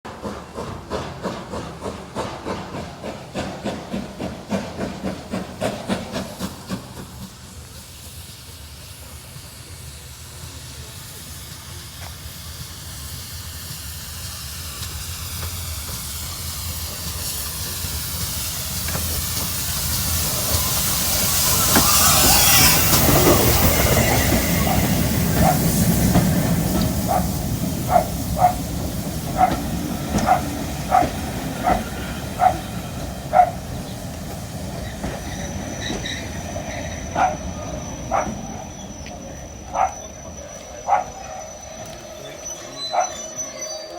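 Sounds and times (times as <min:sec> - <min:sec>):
hiss of steam: 0:00.1 - 0:43.9
steam locomotive rhythmic beats: 0:00.1 - 0:43.9
wheels clicking over rail joints: 0:14.6 - 0:43.9.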